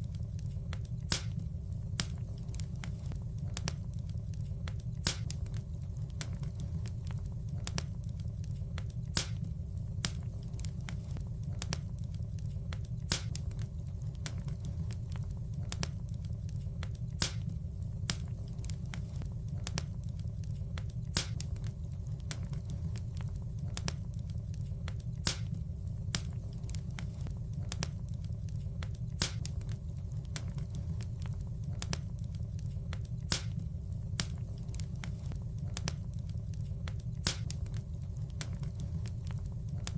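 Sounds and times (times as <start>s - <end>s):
low rumble of flames: 0.0s - 39.9s
wood fire crackling: 0.0s - 39.9s
sharp pop of fire: 1.0s - 1.4s, 5.0s - 5.4s, 9.1s - 9.4s, 13.1s - 13.4s, 17.2s - 17.5s, 21.1s - 21.5s, 25.2s - 25.5s, 29.2s - 29.5s, 33.2s - 33.6s, 37.2s - 37.6s.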